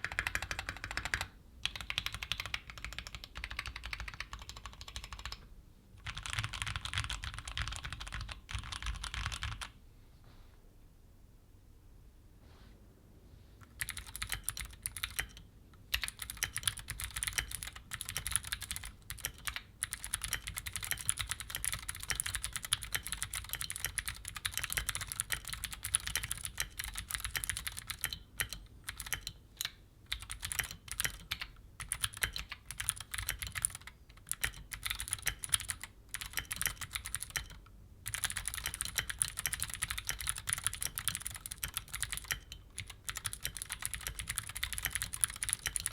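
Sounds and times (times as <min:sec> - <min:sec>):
clicky mechanical keyboard typing: 0:00.0 - 0:09.8, 0:13.6 - 0:45.9.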